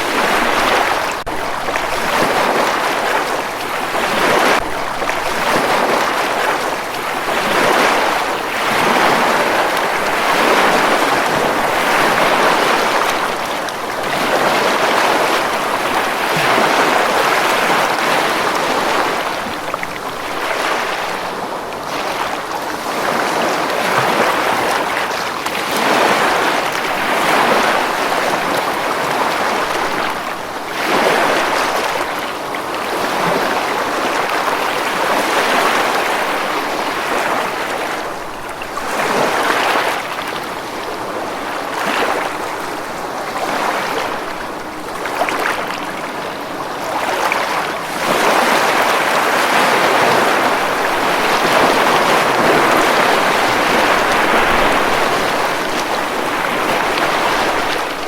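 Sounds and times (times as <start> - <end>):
ocean waves breaking on beach: 0.0 - 58.0.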